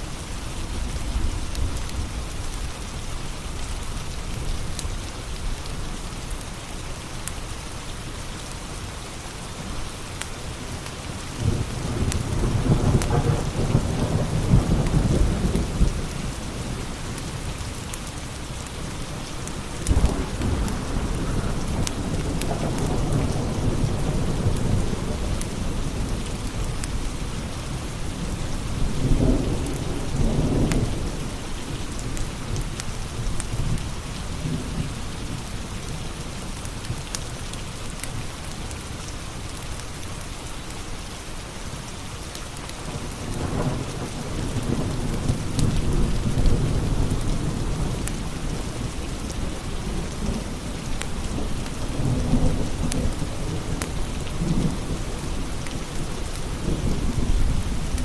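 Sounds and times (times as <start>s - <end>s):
steady rain: 0.0s - 58.0s
low rolling thunder: 10.8s - 17.6s, 19.1s - 36.0s, 42.9s - 58.0s.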